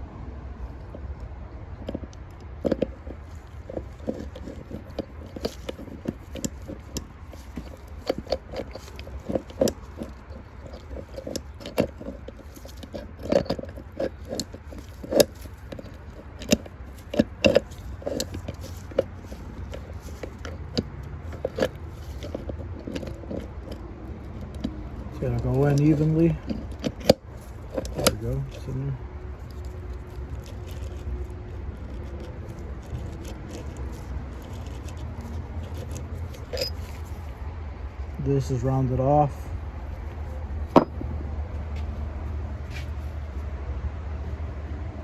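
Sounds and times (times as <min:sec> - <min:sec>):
metal parts clicking and knocking: 0:01.8 - 0:28.8, 0:29.4 - 0:37.3, 0:40.7 - 0:41.0
metal clanks: 0:40.7 - 0:41.0.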